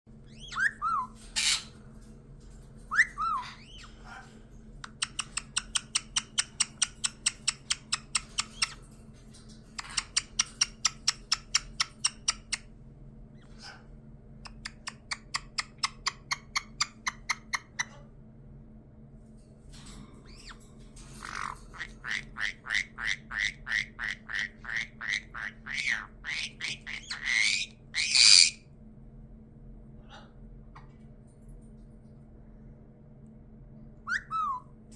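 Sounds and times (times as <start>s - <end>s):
parrot rapid chirps: 0.3s - 1.7s, 2.9s - 4.2s, 4.9s - 8.8s, 9.8s - 12.6s, 14.5s - 18.0s, 21.2s - 28.6s
parrot squawk: 0.3s - 1.7s, 21.2s - 28.6s
parrot whistled notes: 34.1s - 34.6s.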